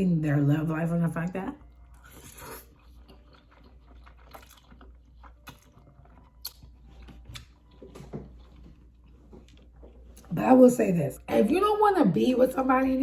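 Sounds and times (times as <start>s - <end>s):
person chewing noodles: 1.6s - 10.2s.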